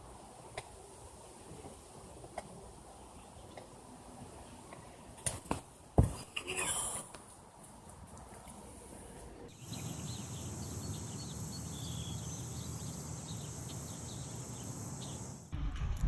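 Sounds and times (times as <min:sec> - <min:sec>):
steady high hiss: 0:00.0 - 0:05.9, 0:09.5 - 0:15.5
small birds chirping: 0:09.5 - 0:15.5
low rumble: 0:15.5 - 0:16.0.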